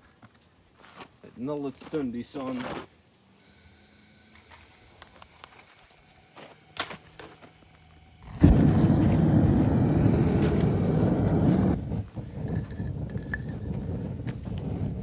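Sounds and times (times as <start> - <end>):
gas burner roaring: 6.4 - 15.0.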